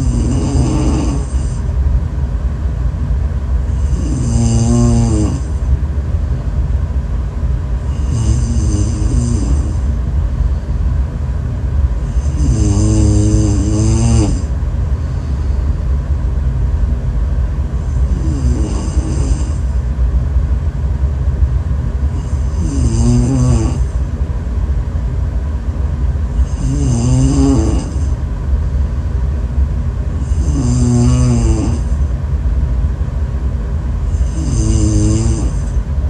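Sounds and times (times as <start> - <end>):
person snoring: 0.0 - 1.6, 3.7 - 5.5, 7.9 - 9.9, 12.1 - 14.5, 17.8 - 19.6, 22.1 - 23.9, 26.4 - 28.2, 30.2 - 32.0, 34.1 - 35.8
steady low rumble: 0.0 - 36.0.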